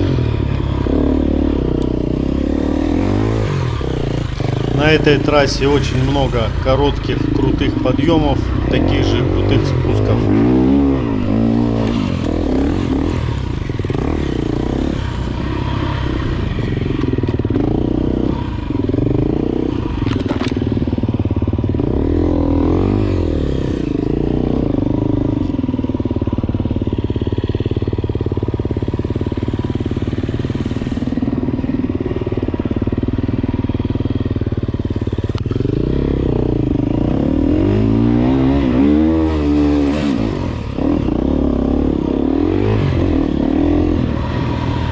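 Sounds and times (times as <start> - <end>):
motorcycle engine revving: 0.0 - 44.9
motorcycle clatter: 4.0 - 11.4.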